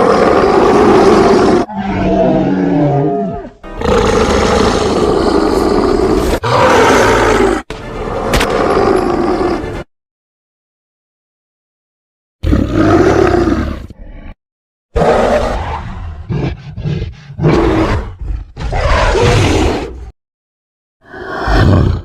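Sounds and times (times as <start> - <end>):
creature roars: 0.0 - 7.7, 12.4 - 14.4, 15.0 - 20.1, 21.0 - 22.0.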